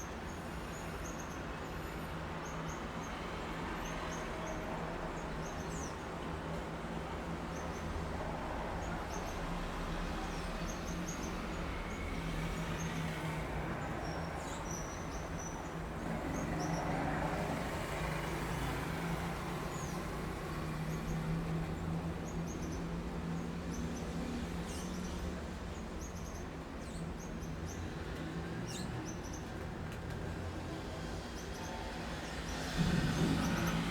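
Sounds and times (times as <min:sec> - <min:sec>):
traffic rumble: 0:03.4 - 0:33.9
low engine hum: 0:32.6 - 0:33.9.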